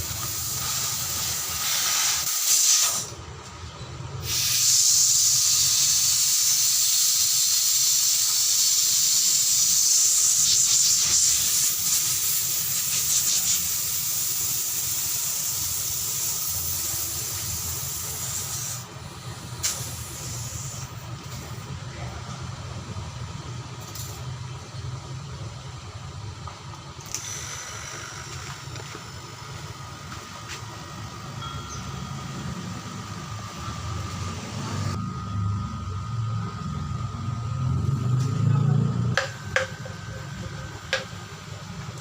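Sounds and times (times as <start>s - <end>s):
compressed air hissing: 0.0s - 3.2s, 4.2s - 21.7s, 27.0s - 31.0s.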